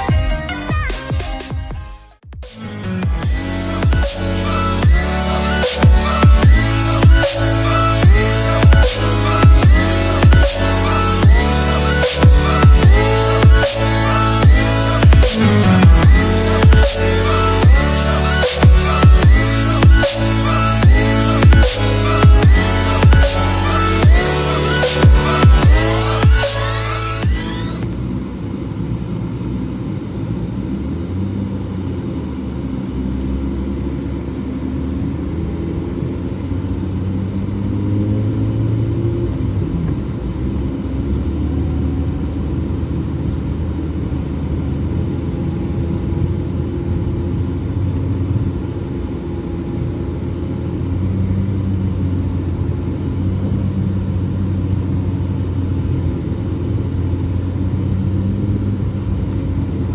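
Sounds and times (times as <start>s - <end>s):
car engine running: 2.4s - 59.9s
road rumble: 2.4s - 59.9s.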